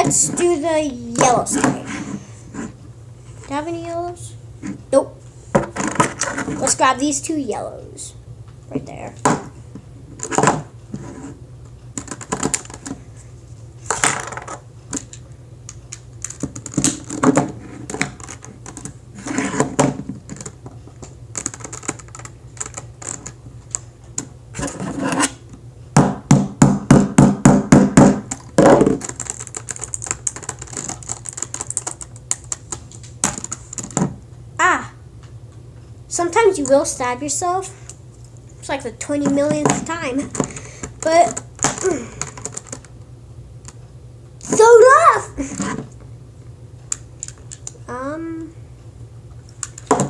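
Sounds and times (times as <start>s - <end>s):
plastic puzzle pieces clicking: 21.4s - 23.4s, 28.3s - 34.0s, 40.4s - 42.9s.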